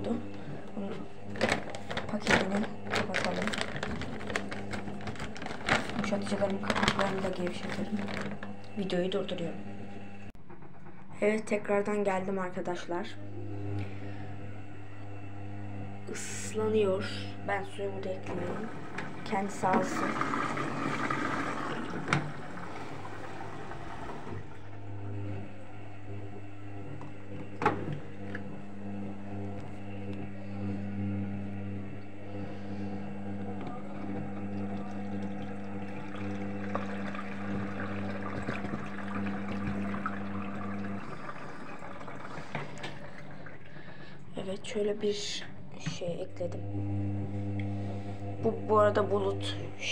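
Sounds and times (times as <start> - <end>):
steady electric hum: 0.0 - 10.4, 11.2 - 49.9
washing machine water rushing: 0.0 - 45.4, 46.0 - 49.9.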